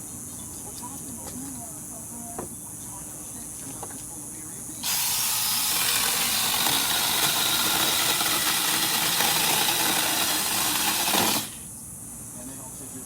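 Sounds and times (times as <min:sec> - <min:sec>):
electric mini chainsaw whirring: 0:04.8 - 0:11.7.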